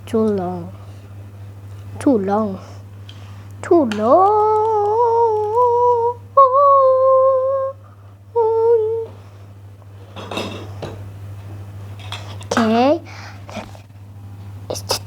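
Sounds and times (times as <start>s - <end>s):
child humming: 3.7s - 9.2s, 14.7s - 15.0s.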